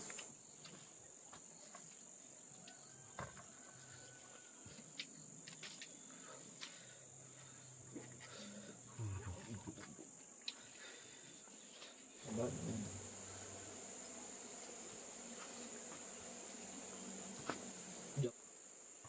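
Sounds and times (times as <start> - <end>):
insects trilling: 0.0 - 19.0
faint low hum: 5.9 - 14.5.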